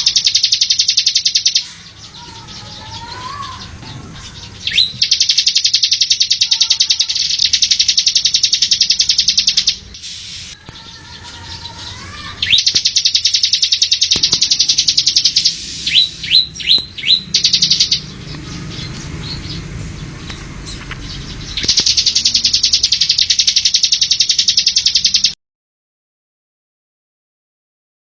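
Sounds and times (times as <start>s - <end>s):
songbird trill: 0.0s - 25.4s
bird down-slurred whistles: 15.2s - 18.0s.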